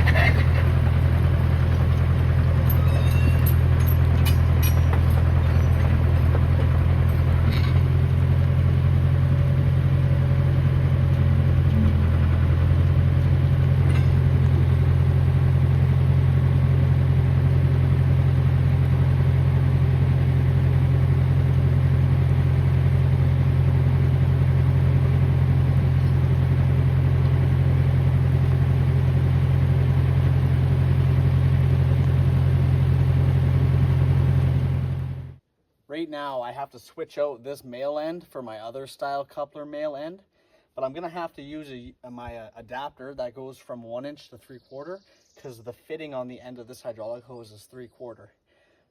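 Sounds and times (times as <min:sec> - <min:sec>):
loader engine idling: 0:00.0 - 0:35.4.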